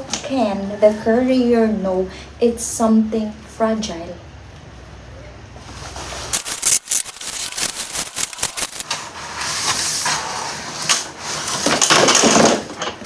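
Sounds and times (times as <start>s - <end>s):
packaging rustling and crackling: 6.3s - 8.8s
scattered clicks: 6.4s - 8.8s.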